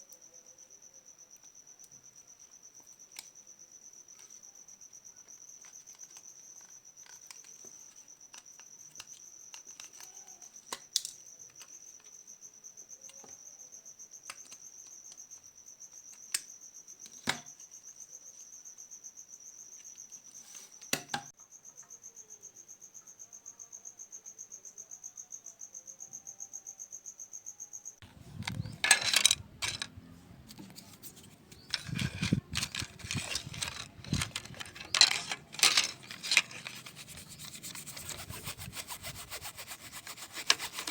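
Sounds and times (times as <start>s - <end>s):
cricket trilling: 0.0s - 40.9s
scraping and rubbing strokes: 28.1s - 40.9s.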